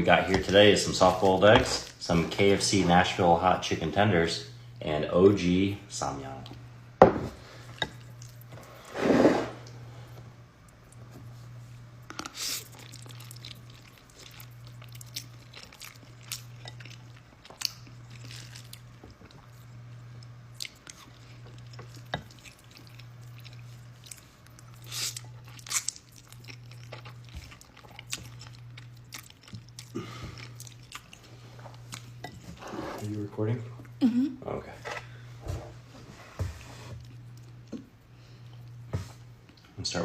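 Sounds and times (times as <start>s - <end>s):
low steady hum: 0.0s - 40.0s
person chewing and biting: 12.1s - 19.6s, 20.2s - 32.2s.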